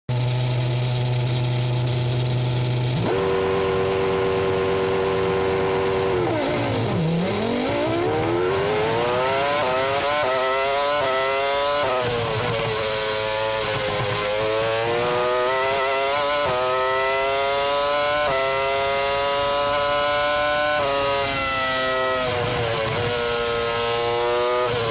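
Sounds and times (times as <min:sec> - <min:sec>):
quick gear upshifts: 0:00.1 - 0:24.9
racing car engine revving: 0:00.1 - 0:24.9.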